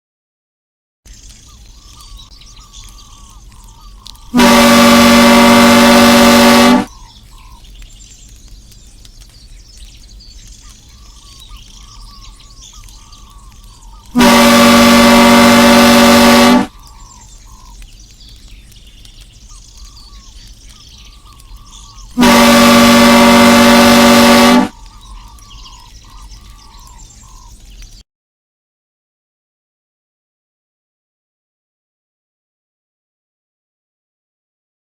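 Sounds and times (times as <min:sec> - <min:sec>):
chirping calls: 0:01.1 - 0:04.7, 0:06.3 - 0:28.0
loud train horn blasts: 0:04.3 - 0:06.9, 0:14.1 - 0:16.7, 0:22.2 - 0:24.8.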